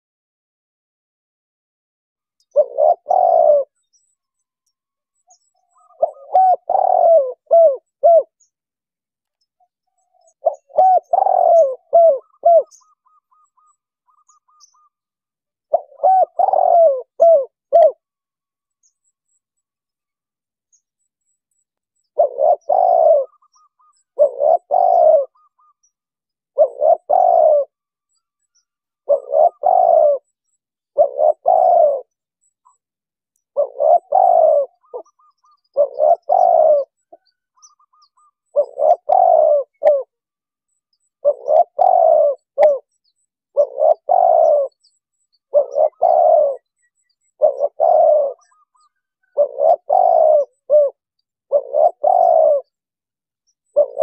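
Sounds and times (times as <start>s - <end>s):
faint high bird chirps: 2.2s - 54.0s
dove cooing: 2.4s - 3.9s, 5.3s - 8.5s, 9.6s - 15.0s, 15.7s - 18.0s, 22.0s - 25.9s, 26.5s - 27.8s, 28.6s - 32.8s, 33.5s - 40.2s, 41.2s - 42.9s, 43.5s - 52.8s, 53.6s - 54.0s.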